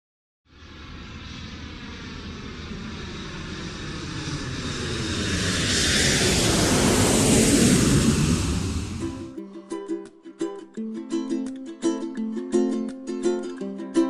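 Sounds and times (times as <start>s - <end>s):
aircraft engine passing: 0.5s - 9.4s.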